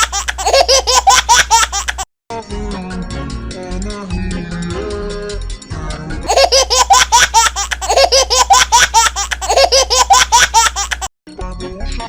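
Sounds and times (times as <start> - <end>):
high-pitched laughter sound effect: 0.0 - 2.0, 6.2 - 11.1
cartoon music: 0.0 - 12.0.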